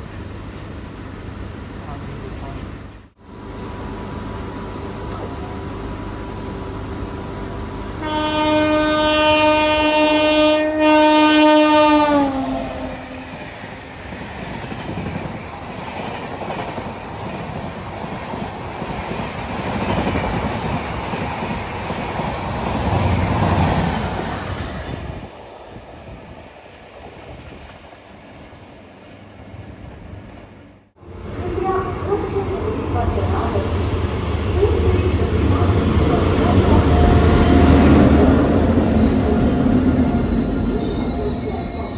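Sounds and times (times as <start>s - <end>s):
locomotive horn: 7.9s - 13.4s, 34.4s - 38.2s
train wheels clattering on rails: 13.4s - 25.0s.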